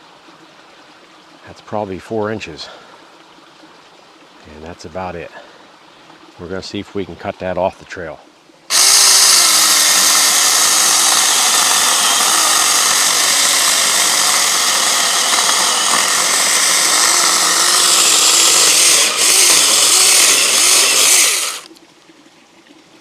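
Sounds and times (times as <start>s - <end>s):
electric chainsaw cutting log: 8.7s - 21.8s.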